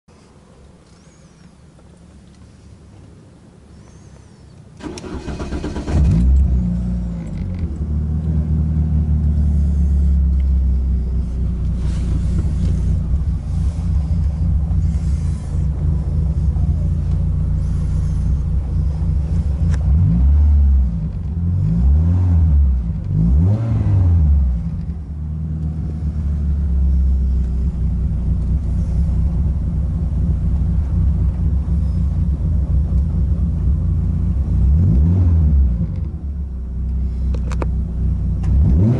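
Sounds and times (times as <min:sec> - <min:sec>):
car engine idling: 0:00.1 - 0:38.9
engine starter cranking: 0:04.8 - 0:06.6
car engine revving: 0:04.8 - 0:38.9.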